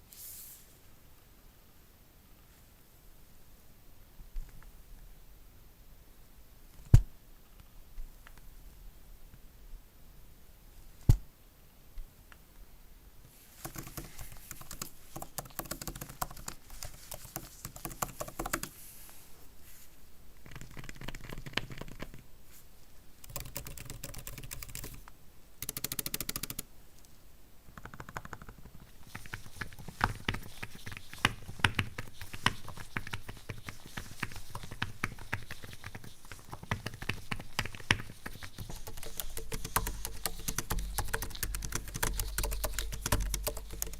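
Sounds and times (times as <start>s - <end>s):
keyboard key clicks: 36.5s - 43.9s.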